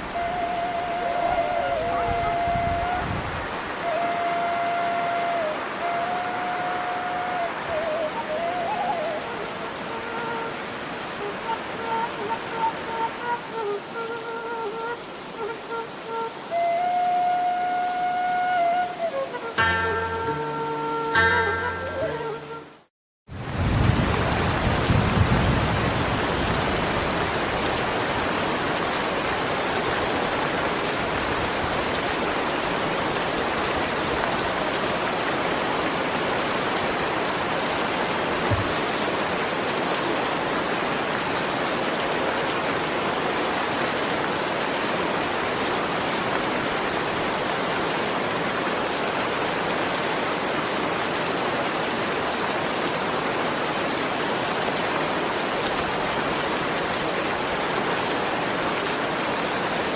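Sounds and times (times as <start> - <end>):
steady rain pouring: 0.0 - 59.9.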